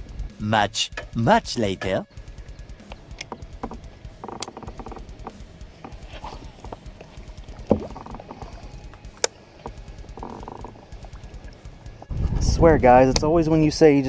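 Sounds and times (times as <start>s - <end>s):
low rumble: 0.0s - 14.0s
light knocks and clicks on kayak: 2.9s - 11.6s.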